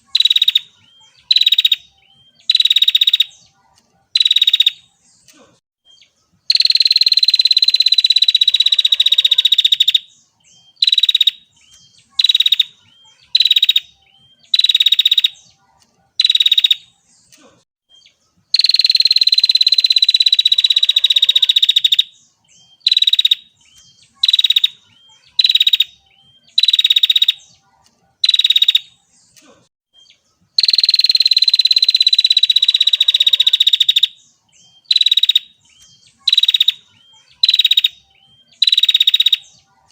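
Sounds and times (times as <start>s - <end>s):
bird buzzy trills: 30.6s - 39.6s.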